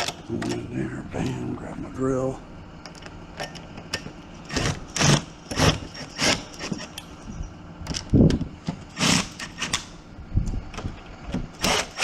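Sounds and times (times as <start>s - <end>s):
cordless drill driving screws: 4.5s - 6.9s, 8.9s - 9.9s, 11.6s - 12.0s.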